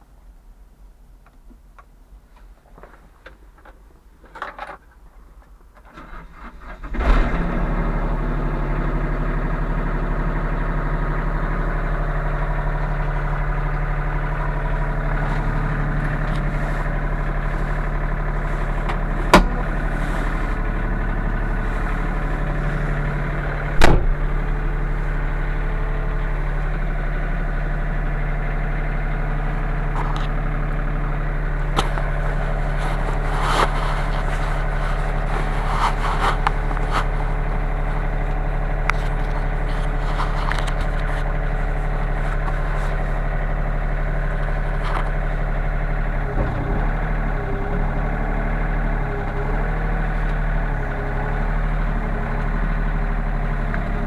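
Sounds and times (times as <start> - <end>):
clicks and rattles: 2.8 - 5.9
diesel engine idling: 6.0 - 54.0
sharp knock: 23.8 - 24.2.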